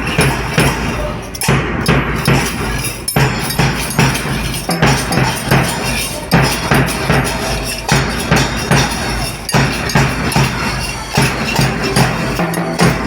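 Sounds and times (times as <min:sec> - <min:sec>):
music with strong beat: 0:00.0 - 0:13.0.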